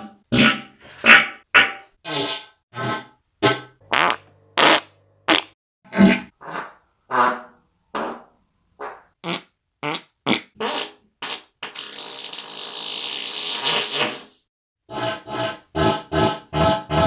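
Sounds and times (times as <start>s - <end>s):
short fart sounds: 3.4s - 6.3s, 9.2s - 14.3s.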